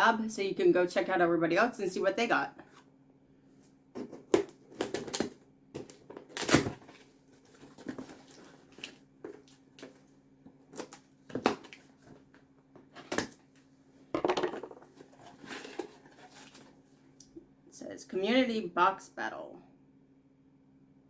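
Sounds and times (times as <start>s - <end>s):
package rustling: 4.0s - 12.4s
package tearing: 4.2s - 9.0s.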